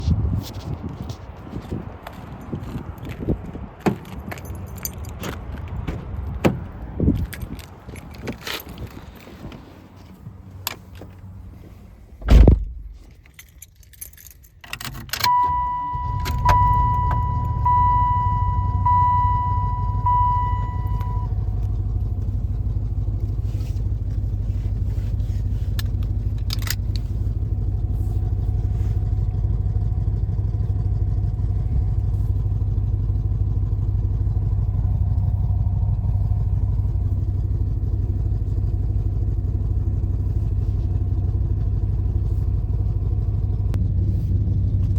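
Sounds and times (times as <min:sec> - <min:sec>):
car engine starting and idling: 0:00.1 - 0:44.9
thump: 0:12.2 - 0:12.8
dashboard warning chime: 0:15.2 - 0:21.5.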